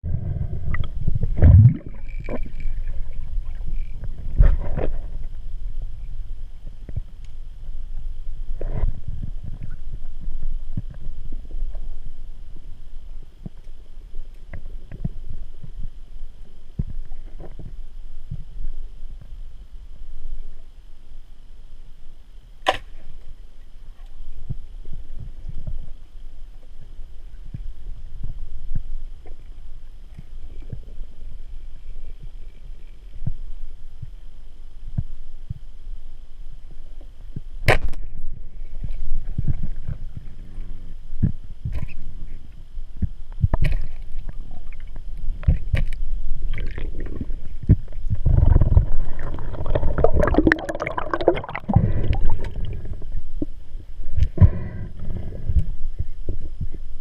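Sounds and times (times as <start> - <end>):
underwater rumble of water: 0.0 - 57.0
churning gurgling water: 46.4 - 53.1.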